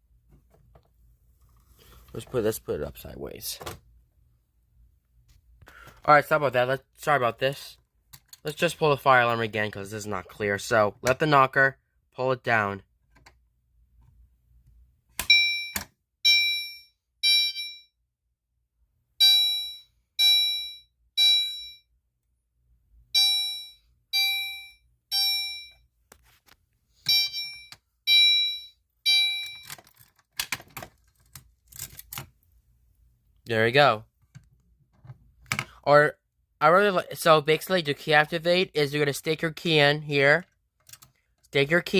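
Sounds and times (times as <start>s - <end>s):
fire alarm chimes: 15.3s - 18.0s, 19.2s - 21.9s, 23.2s - 25.8s, 27.1s - 29.7s.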